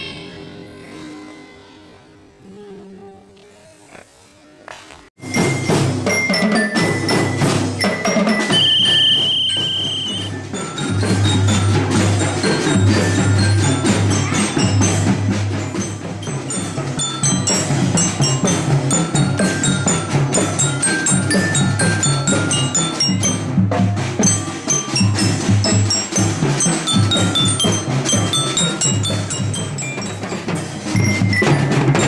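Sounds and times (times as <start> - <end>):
glockenspiel notes: 5.2 - 32.0
marching band playing: 5.2 - 32.0
high held tone: 8.1 - 10.6.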